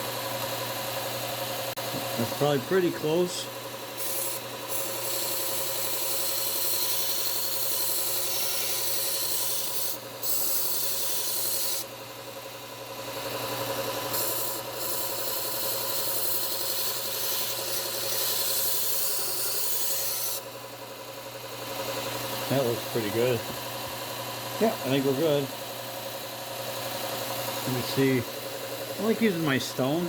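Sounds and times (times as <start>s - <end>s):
sander motor hum: 0.0s - 8.9s, 9.5s - 30.0s
knife grinding on belt sander: 0.0s - 30.0s.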